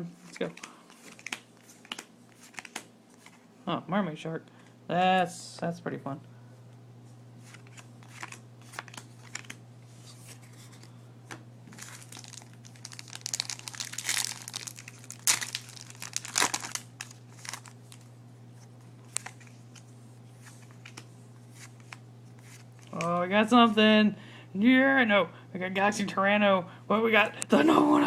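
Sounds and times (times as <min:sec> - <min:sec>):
low steady hum: 0:00.0 - 0:28.0
foil wrapper crinkling and tearing: 0:11.7 - 0:18.1.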